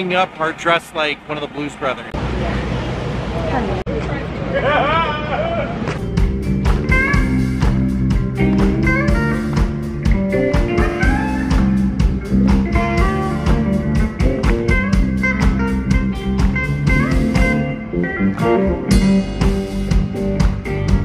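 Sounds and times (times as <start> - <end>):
steady drum beat: 6.0 - 17.6, 18.9 - 21.0
blues guitar: 6.0 - 21.0.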